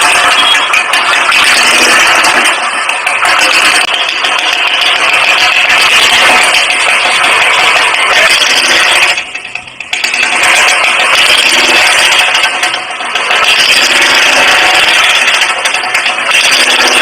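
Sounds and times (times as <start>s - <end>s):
rattling motor running: 0.0s - 17.0s.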